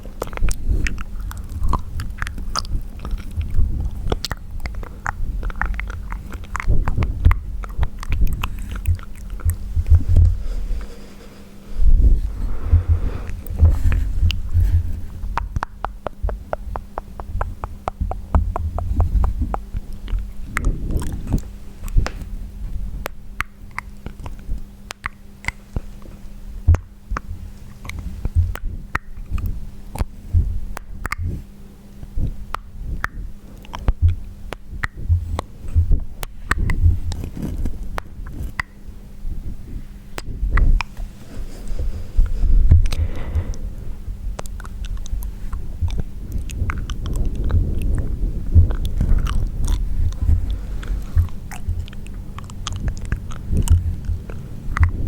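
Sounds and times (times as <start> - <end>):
tongue and lip clicks: 0.0 - 10.9, 12.0 - 55.0
low thuds: 5.3 - 10.9, 11.8 - 23.2, 39.3 - 55.0.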